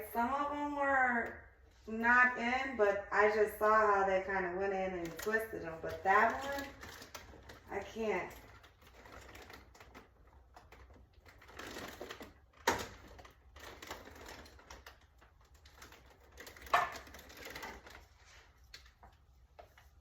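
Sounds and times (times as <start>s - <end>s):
parts clicking and rattling: 5.0s - 20.0s.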